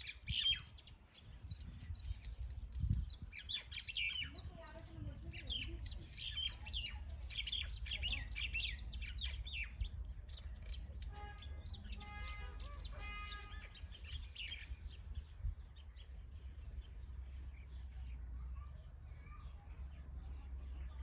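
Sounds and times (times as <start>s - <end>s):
flock of birds chirping: 0.0s - 21.0s
harsh buzzy bird calls: 5.4s - 14.7s.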